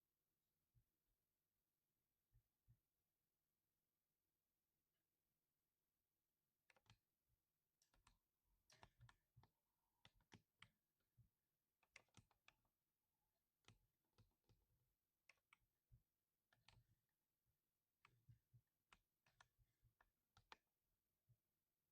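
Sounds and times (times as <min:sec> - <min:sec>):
faint mechanical keyboard typing: 0:06.7 - 0:07.0, 0:07.8 - 0:10.9, 0:11.8 - 0:12.8, 0:13.6 - 0:15.7, 0:16.5 - 0:16.9, 0:18.0 - 0:20.7.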